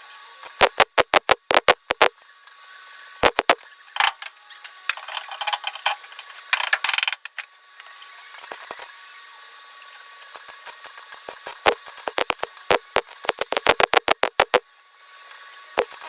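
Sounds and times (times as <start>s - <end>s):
welder crackling: 0.6s - 2.1s, 3.2s - 3.6s, 11.5s - 14.6s.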